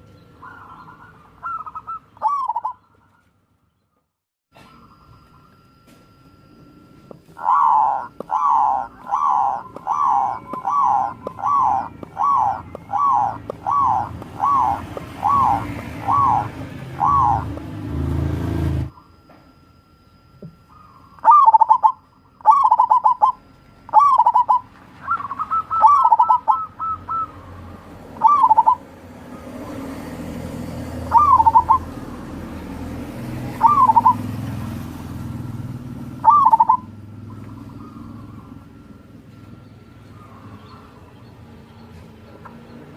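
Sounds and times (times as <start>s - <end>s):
dove cooing: 0.4s - 3.2s, 7.3s - 18.4s, 20.7s - 34.8s, 36.1s - 38.9s, 39.9s - 41.3s.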